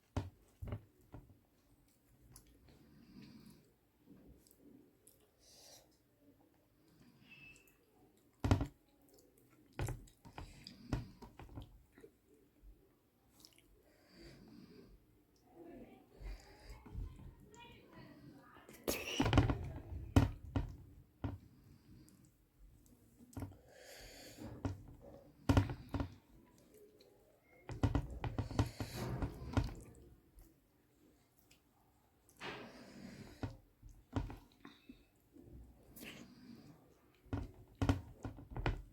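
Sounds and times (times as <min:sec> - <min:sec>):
chewing with wet smacks: 0:13.3 - 0:13.8.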